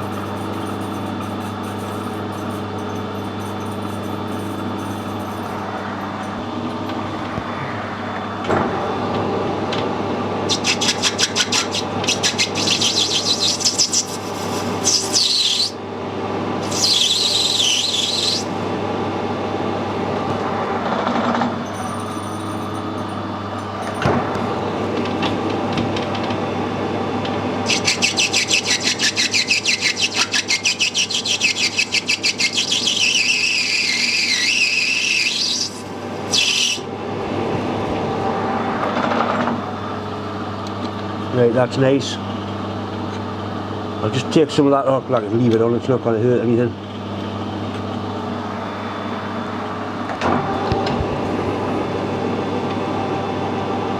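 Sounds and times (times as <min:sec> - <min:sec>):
high pulsing squeal of tool chatter: 0:00.0 - 0:06.6, 0:10.5 - 0:15.8, 0:16.6 - 0:18.6, 0:27.6 - 0:36.9
metal lathe running: 0:00.0 - 0:19.1, 0:27.1 - 0:40.5.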